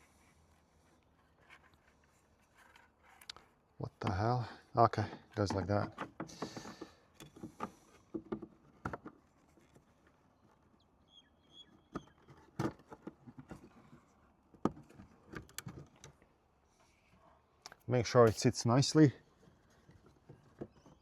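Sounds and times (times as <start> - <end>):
plastic parts clicking: 12.0 - 16.2.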